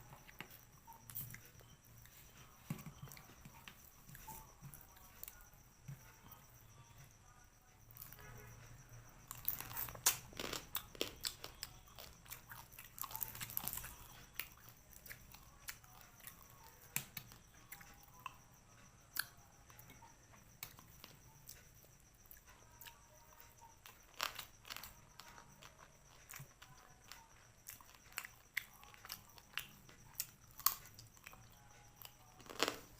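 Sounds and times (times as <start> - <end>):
person chewing and crunching: 9.2 - 18.4, 19.1 - 21.6, 22.2 - 32.9.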